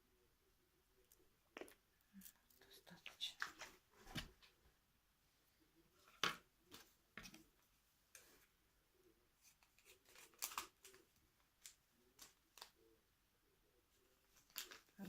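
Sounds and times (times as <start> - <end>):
paper and plastic rustling: 9.4 - 12.8, 14.3 - 15.0.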